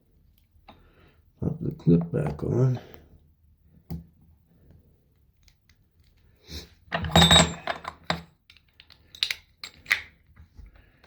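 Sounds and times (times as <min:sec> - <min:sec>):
metal parts clicking and clinking: 0:06.9 - 0:10.1.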